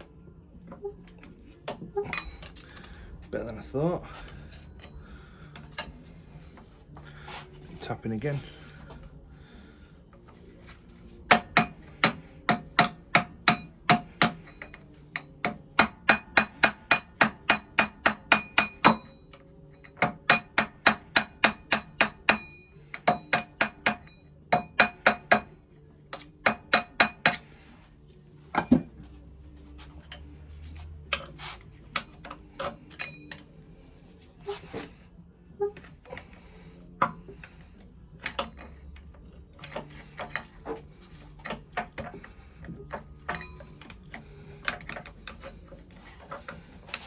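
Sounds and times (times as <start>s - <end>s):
hammer tapping on metal: 11.3s - 19.2s, 19.9s - 25.5s, 26.1s - 27.4s.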